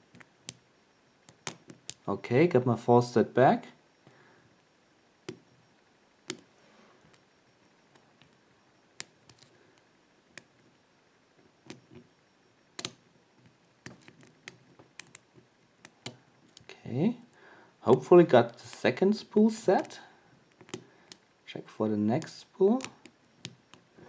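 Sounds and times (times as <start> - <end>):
lock pick metallic clicks: 12.8 - 16.7, 18.0 - 21.2.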